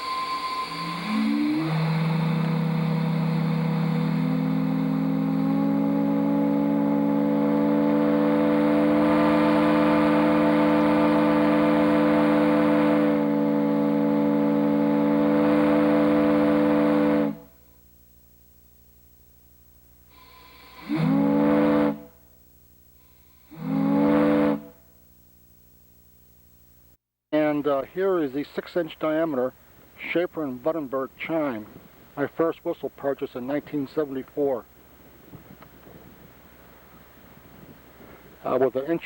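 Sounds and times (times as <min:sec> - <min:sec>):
chime whistle chord: 0:00.0 - 0:01.3.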